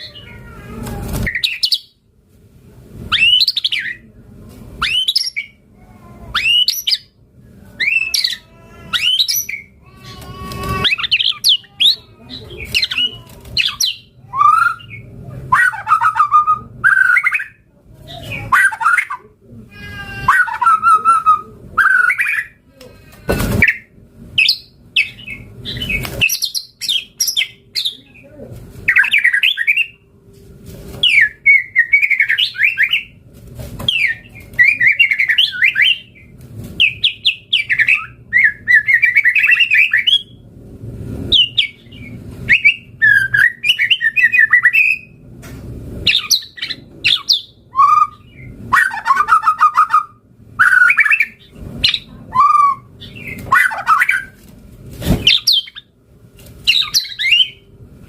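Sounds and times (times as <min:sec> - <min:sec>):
songbird singing whistled notes: 0:56.7 - 0:57.6.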